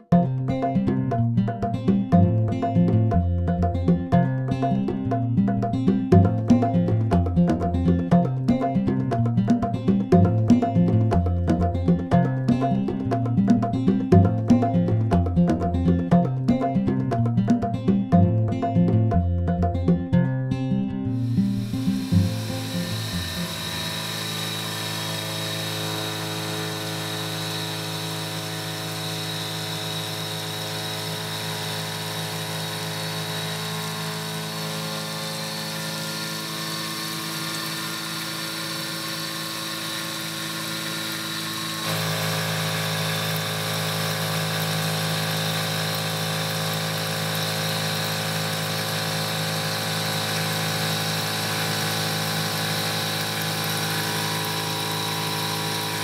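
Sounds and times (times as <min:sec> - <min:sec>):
milling machine spindle whine: 0:21.3 - 0:56.0.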